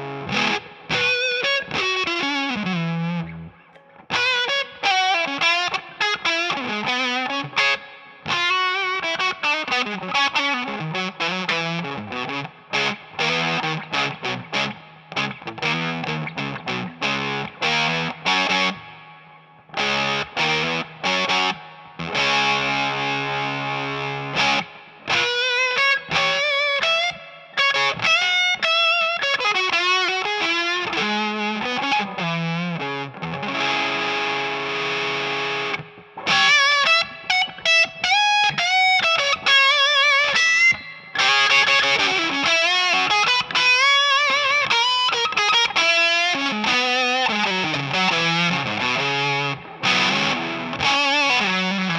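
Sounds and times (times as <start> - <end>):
fuzz electric guitar: 0.0 - 51.9.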